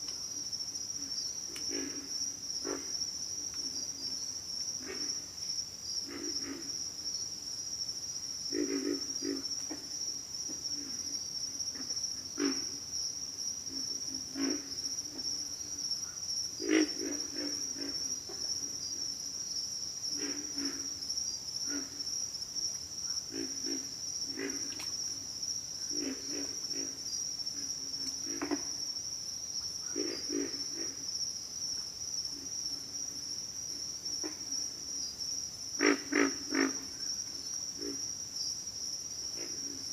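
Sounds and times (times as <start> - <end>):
high insect chorus: 0.0 - 39.9
frogs grunting: 1.5 - 3.0, 4.8 - 5.3, 6.0 - 6.8, 8.5 - 10.0, 11.7 - 12.8, 13.7 - 18.8, 20.1 - 22.1, 23.1 - 25.1, 25.8 - 28.8, 29.8 - 31.2, 35.7 - 38.2, 39.2 - 39.9.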